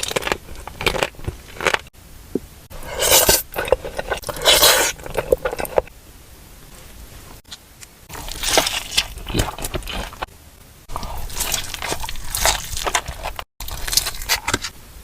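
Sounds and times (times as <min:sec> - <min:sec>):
dessert being bitten and chewed: 0:00.0 - 0:01.9, 0:02.8 - 0:05.9, 0:07.5 - 0:10.3, 0:10.9 - 0:14.7.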